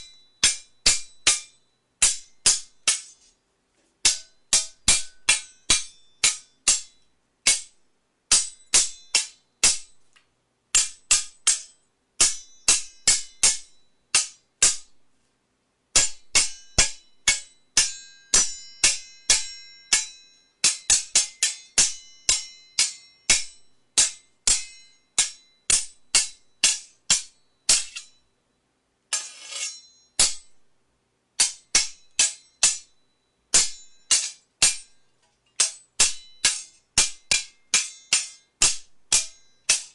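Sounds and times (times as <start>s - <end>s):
sword blades clashing: 0.0s - 3.2s, 4.0s - 7.7s, 8.3s - 9.9s, 10.8s - 14.9s, 16.0s - 28.2s, 29.1s - 30.5s, 31.4s - 32.9s, 33.5s - 35.0s, 35.6s - 39.9s
blade scraping along blade: 29.1s - 29.9s.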